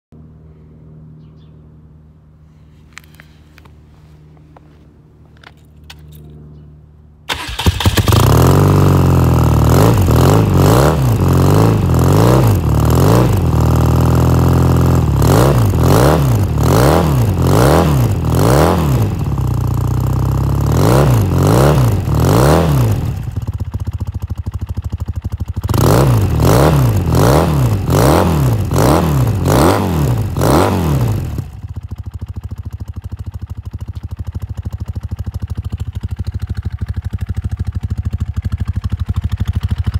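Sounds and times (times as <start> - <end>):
engine revving: 7.3 - 23.5, 25.6 - 31.7
engine idling: 31.2 - 39.9.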